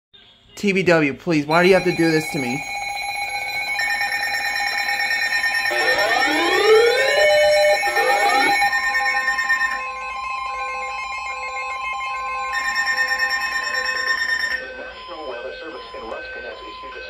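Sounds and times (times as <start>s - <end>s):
short repeating beeps: 1.5s - 2.6s
rising sweeping alarm tones: 1.5s - 17.0s
steady alarm tone: 1.5s - 17.0s.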